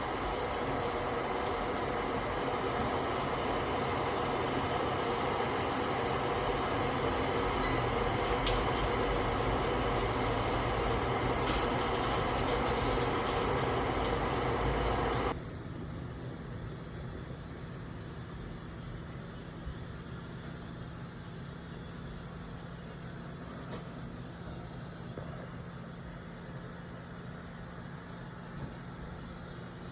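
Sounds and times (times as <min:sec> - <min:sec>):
mechanical running noise: 0:00.0 - 0:15.4.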